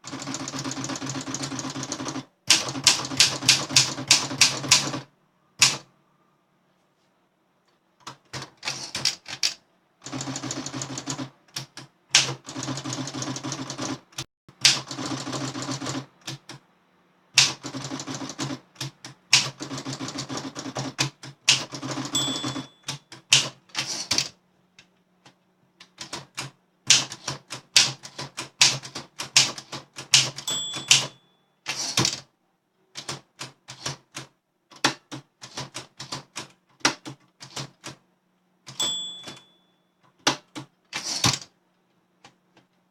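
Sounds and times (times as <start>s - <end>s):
typewriter bell ding: 22.1s - 23.1s, 30.4s - 31.5s, 38.7s - 39.9s
typewriter key strikes: 26.9s - 32.2s, 38.7s - 39.5s.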